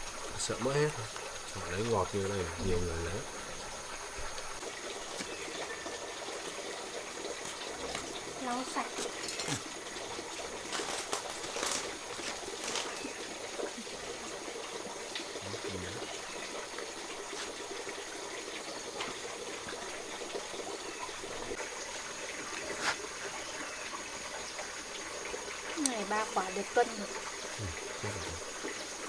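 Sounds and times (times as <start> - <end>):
trickle of running water: 0.0 - 29.0
light knocks and rustles: 7.4 - 13.1.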